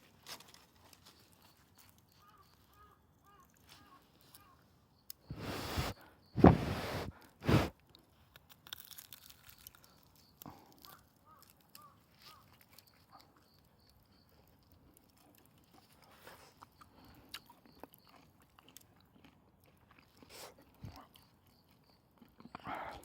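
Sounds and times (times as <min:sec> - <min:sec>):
rustling scrapes: 0:05.3 - 0:07.7
faint crackles and clicks: 0:07.9 - 0:17.0.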